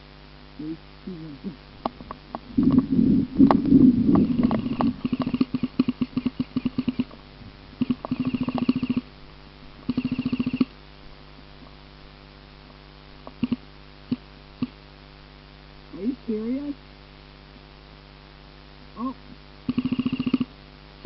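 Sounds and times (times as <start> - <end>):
isolated clicks: 1.8 - 7.2, 7.8 - 9.1, 12.6 - 14.8, 19.7 - 20.5.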